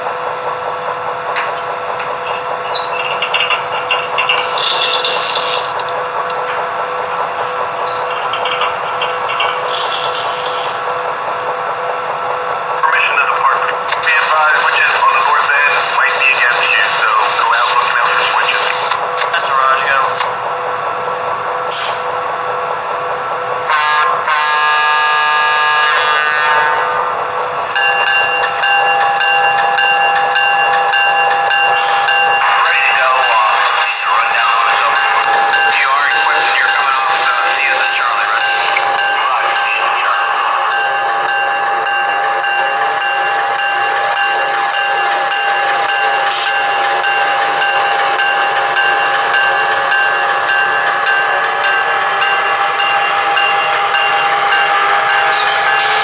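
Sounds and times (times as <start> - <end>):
electric locomotive whine: 0.0 - 56.0
electric locomotive horn from speaker: 23.7 - 26.8.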